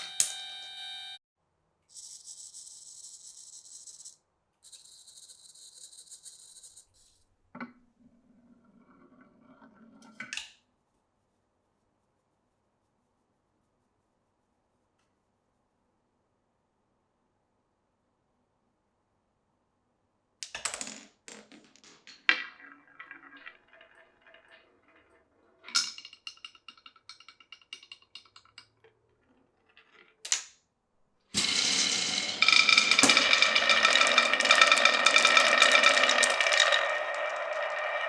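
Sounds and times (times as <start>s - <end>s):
marbles clicking on wooden run: 20.4s - 30.5s, 31.4s - 38.0s.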